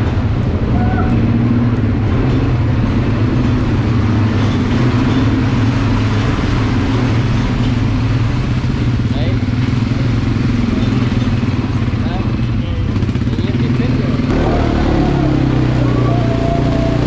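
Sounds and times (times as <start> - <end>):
atv engine running: 0.0 - 17.0.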